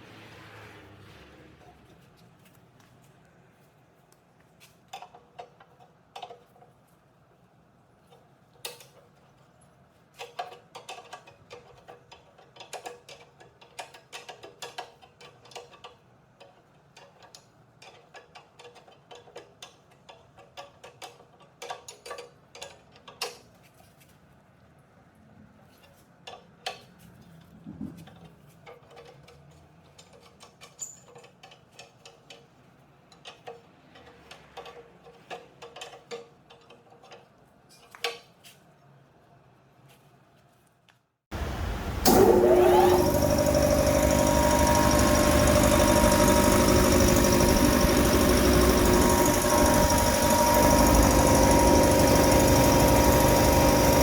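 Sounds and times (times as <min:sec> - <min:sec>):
hand tools and metal parts clinking: 0:28.2 - 0:32.5, 0:33.1 - 0:38.4, 0:42.1 - 0:54.0.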